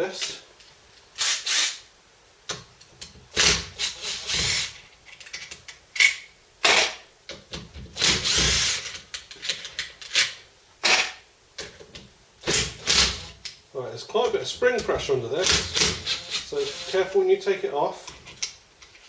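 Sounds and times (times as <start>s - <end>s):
power driver spinning: 14.7s - 17.2s.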